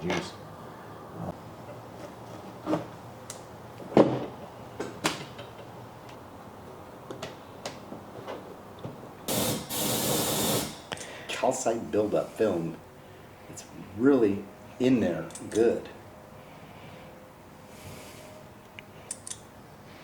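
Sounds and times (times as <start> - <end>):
loud hissing air: 9.3 - 11.3, 17.6 - 18.4.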